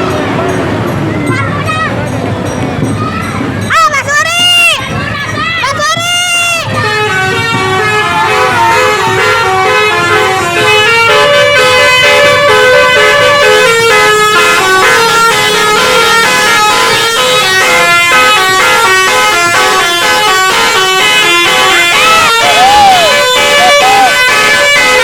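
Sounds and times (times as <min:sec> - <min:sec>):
musical bus horn tune: 0:06.0 - 0:25.0.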